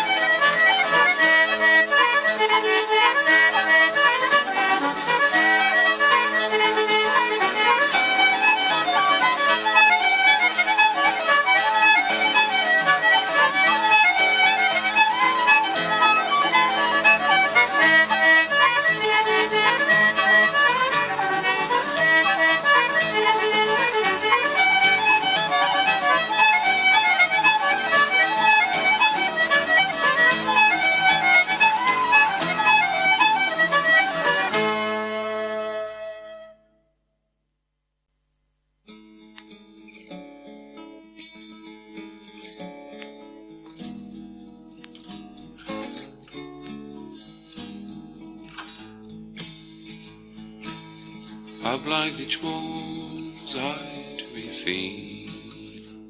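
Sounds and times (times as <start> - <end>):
traditional folk band playing: 0.0 - 36.5
fiddle melody: 0.0 - 36.7, 41.9 - 56.0.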